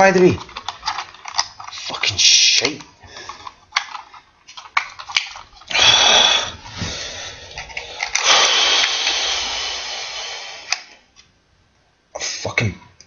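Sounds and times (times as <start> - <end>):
plastic scraping and grinding: 0.0 - 5.8.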